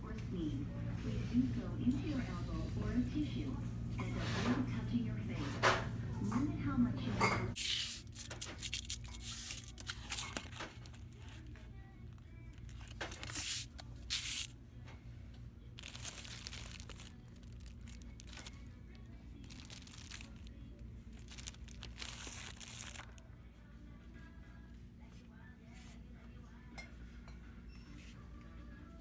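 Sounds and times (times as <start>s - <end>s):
rustling and crinkling: 8.2s - 11.7s, 15.8s - 23.2s.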